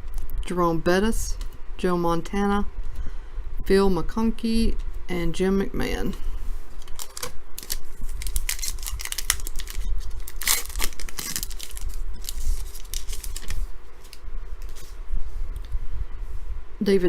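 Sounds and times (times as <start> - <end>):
wrapper tearing and crinkling: 6.8 - 15.0.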